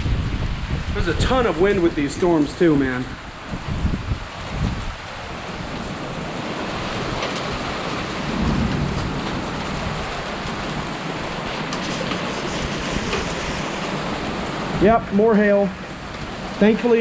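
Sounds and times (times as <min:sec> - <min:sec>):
thunder rumble: 0:00.0 - 0:16.6
torrential rain hissing: 0:00.0 - 0:17.0.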